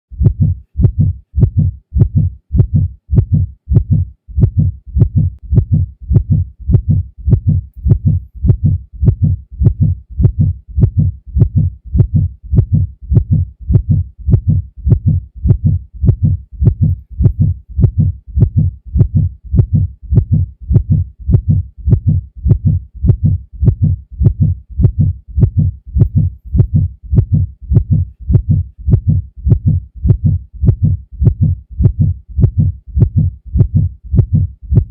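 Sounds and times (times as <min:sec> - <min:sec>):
heart beating: 0:00.1 - 0:34.9.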